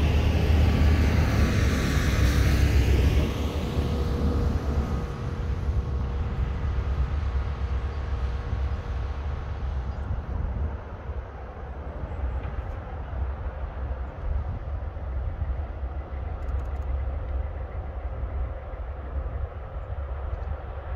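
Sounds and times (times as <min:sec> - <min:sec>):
train passing on track: 0:00.0 - 0:20.9.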